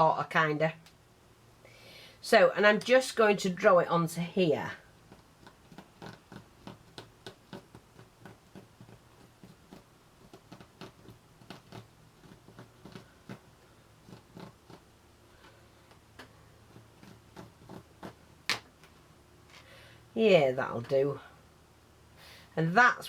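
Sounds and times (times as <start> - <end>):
pen scratching on material: 5.0 - 15.5, 16.2 - 18.3.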